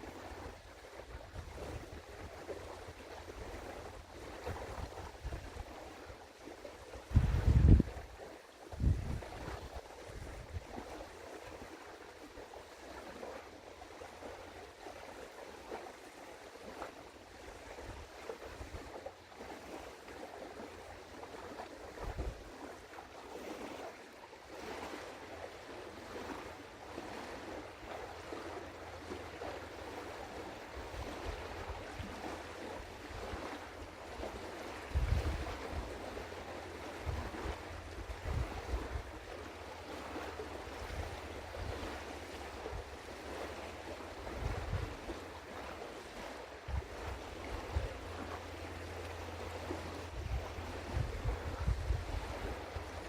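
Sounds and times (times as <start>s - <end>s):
wind gusts buffeting microphone: 7.1s - 8.1s, 8.7s - 10.9s, 34.7s - 36.2s, 36.9s - 39.2s, 44.2s - 45.1s, 50.0s - 53.0s
river water rushing: 24.5s - 53.0s.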